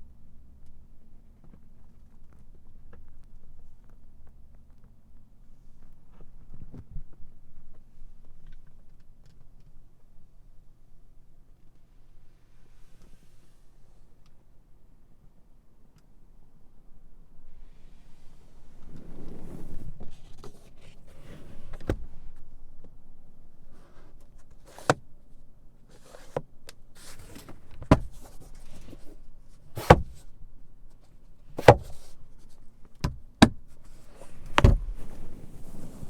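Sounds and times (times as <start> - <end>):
handling noise: 27.0 - 30.4, 31.5 - 36.0.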